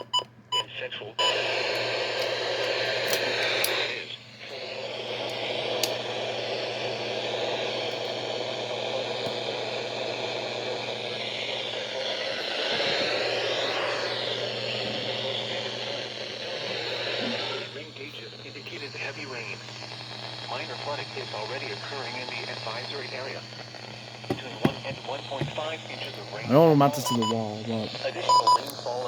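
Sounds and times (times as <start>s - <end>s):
radio static hiss: 0.6s - 29.0s.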